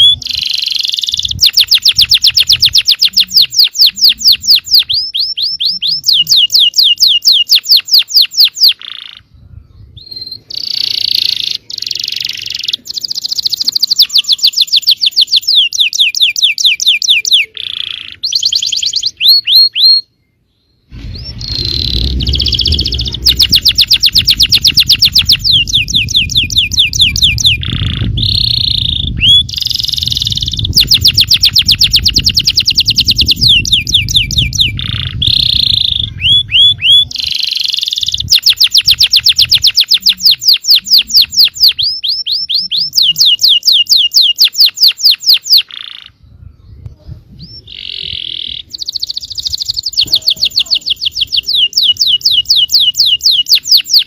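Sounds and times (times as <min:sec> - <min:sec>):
canary singing trills: 0:00.0 - 0:54.0
low rumble: 0:20.8 - 0:36.9.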